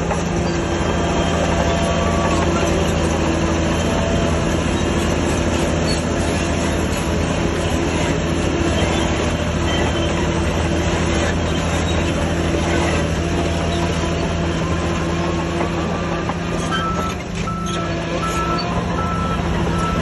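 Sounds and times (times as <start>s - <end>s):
diesel engine running under load: 0.0s - 20.0s
reversing alarm beeping: 16.6s - 20.0s.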